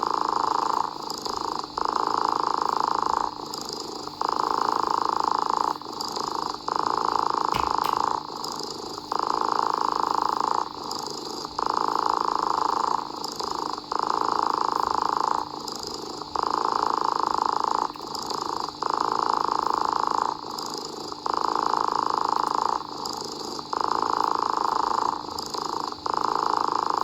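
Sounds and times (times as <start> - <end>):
cat purring: 0.0 - 27.0.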